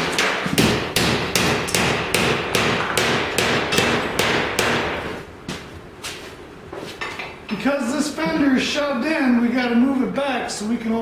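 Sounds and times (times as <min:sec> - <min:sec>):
hammer blows on sheet metal: 0:00.0 - 0:05.2.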